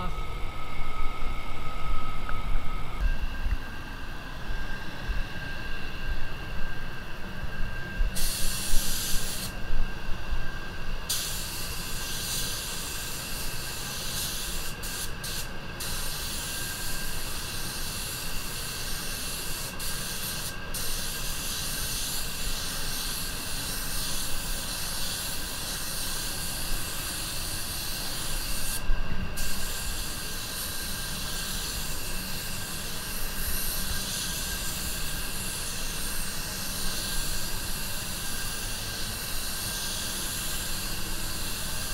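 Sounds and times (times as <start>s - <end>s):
spray gun hissing: 8.2s - 9.6s, 11.1s - 28.8s, 29.4s - 41.9s.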